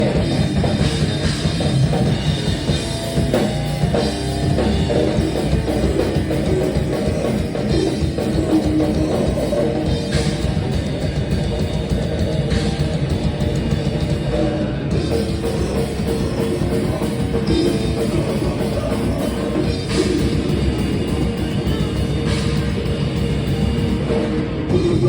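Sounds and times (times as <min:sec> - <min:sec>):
band playing heavy rock: 0:00.0 - 0:25.0
drum kit: 0:00.0 - 0:25.0.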